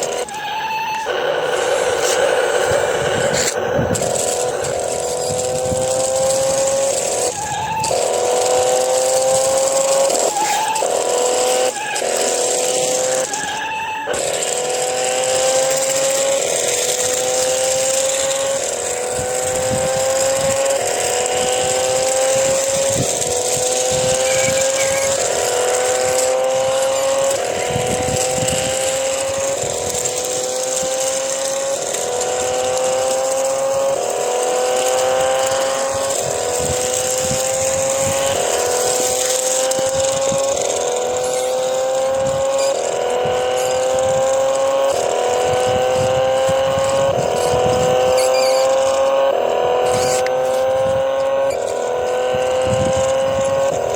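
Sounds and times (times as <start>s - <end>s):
race car engine revving: 0.0s - 53.9s.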